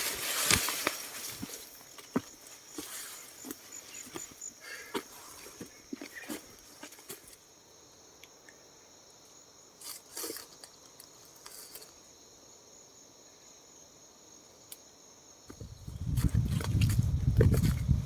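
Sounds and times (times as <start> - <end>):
rustling: 0.0 - 4.4
insects droning: 0.0 - 18.0
wind buffeting microphone: 15.5 - 18.0.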